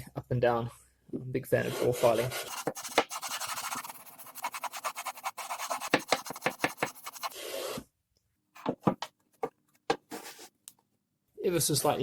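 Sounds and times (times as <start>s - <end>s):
file rasping on wood: 1.7s - 7.4s.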